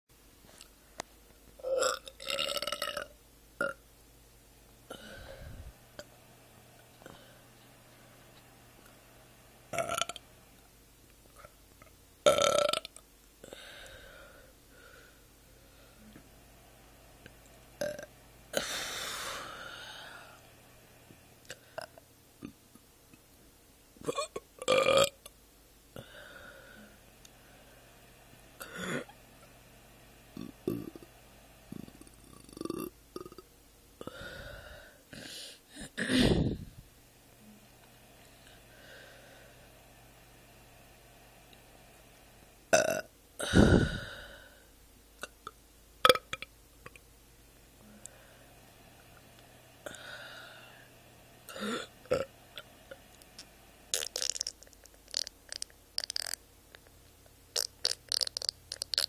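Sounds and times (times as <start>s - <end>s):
person burping: 1.6s - 3.8s, 9.8s - 10.2s, 12.3s - 13.0s, 17.8s - 18.7s, 24.0s - 25.2s, 28.6s - 29.2s, 31.8s - 33.4s, 35.8s - 36.7s, 42.7s - 44.3s, 45.2s - 46.5s, 51.5s - 52.3s, 53.9s - 56.4s, 57.6s - 59.0s
breaths: 4.9s - 5.9s, 6.9s - 7.6s, 13.4s - 16.3s, 18.6s - 20.5s, 26.0s - 28.0s, 34.0s - 36.6s, 38.2s - 39.8s, 43.4s - 44.7s, 47.8s - 48.8s, 49.8s - 52.0s.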